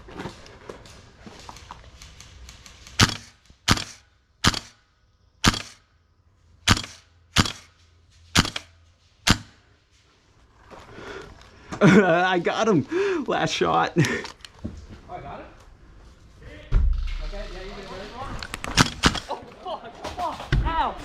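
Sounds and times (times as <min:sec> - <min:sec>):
airsoft gun shots: 0:03.0 - 0:04.8, 0:05.4 - 0:05.8, 0:06.6 - 0:07.7, 0:08.3 - 0:08.7, 0:09.3 - 0:09.6, 0:18.7 - 0:19.3.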